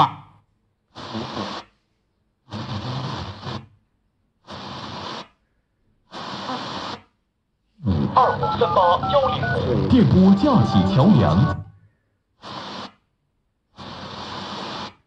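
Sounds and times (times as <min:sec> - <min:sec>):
radio static hiss: 0:01.0 - 0:01.8, 0:02.5 - 0:03.6, 0:04.4 - 0:05.4, 0:06.1 - 0:07.2, 0:07.8 - 0:11.7, 0:12.4 - 0:13.1, 0:13.7 - 0:15.0.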